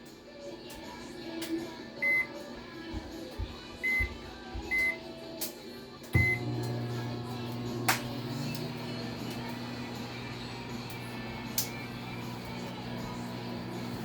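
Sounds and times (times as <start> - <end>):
microwave keypad beeps: 2.0 - 2.4, 3.8 - 4.1, 4.7 - 5.0, 6.2 - 6.5
microwave humming: 6.1 - 14.0.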